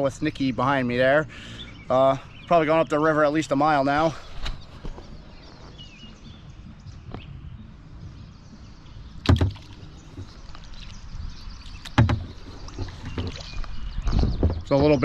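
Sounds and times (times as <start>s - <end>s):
kayak paddling: 8.1s - 15.0s
paddle knocking on kayak hull: 9.2s - 10.3s, 11.8s - 13.4s.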